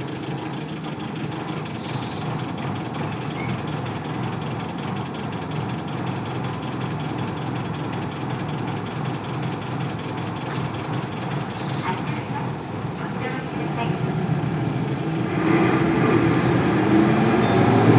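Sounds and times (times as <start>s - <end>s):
diesel bus engine droning: 0.0s - 17.9s.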